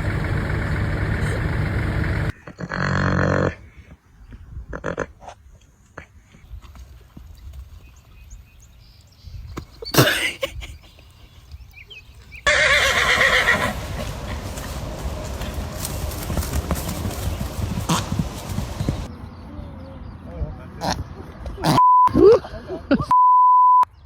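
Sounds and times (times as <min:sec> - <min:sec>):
horse whinnying: 0:12.5 - 0:14.7
low hoof thuds: 0:13.4 - 0:19.1.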